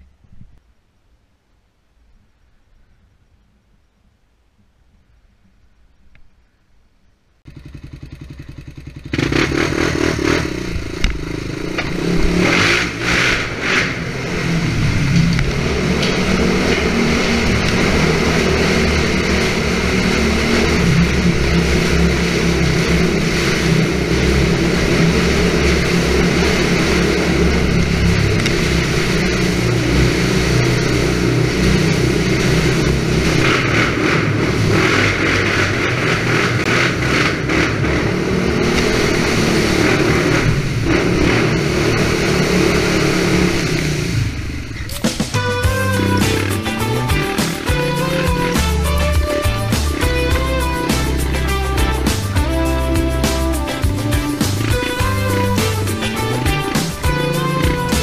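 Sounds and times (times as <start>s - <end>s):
wind noise: 0.0s - 0.7s
atv engine running: 7.4s - 58.0s
rattling: 7.5s - 58.0s.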